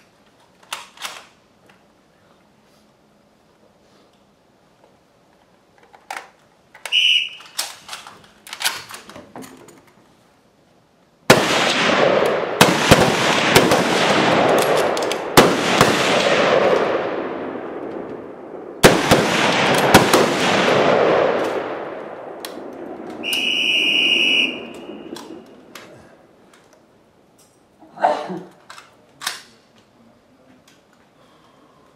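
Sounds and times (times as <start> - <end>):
whistle blasts: 6.8 - 7.6, 23.1 - 25.5
rifle shots with echoing tails: 11.3 - 25.9
clicks: 22.4 - 23.5, 24.6 - 27.6.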